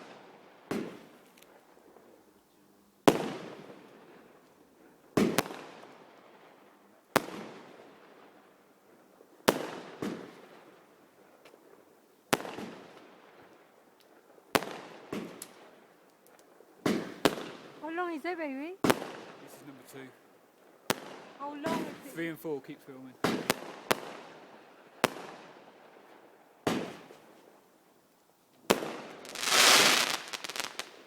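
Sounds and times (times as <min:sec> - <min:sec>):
fireworks bursting: 0:16.8 - 0:27.6, 0:28.7 - 0:31.0.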